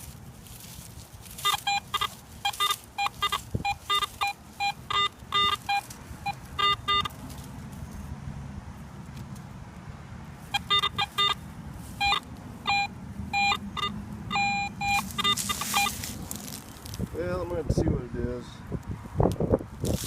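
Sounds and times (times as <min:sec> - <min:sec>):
metal detector beeps: 0:01.4 - 0:07.2, 0:10.5 - 0:11.4, 0:12.0 - 0:16.2.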